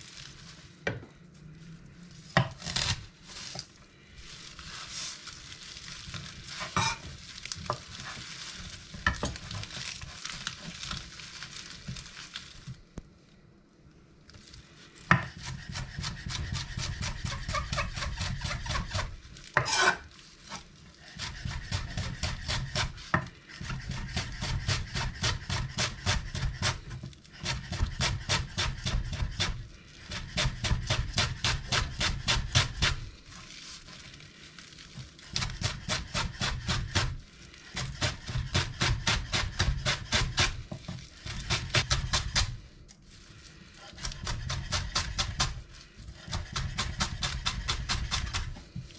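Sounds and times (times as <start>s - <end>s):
knife chopping on wooden board: 15.1s - 19.9s, 21.2s - 26.8s, 27.4s - 33.0s, 35.4s - 37.1s, 37.8s - 42.5s, 44.0s - 45.6s, 46.2s - 48.6s.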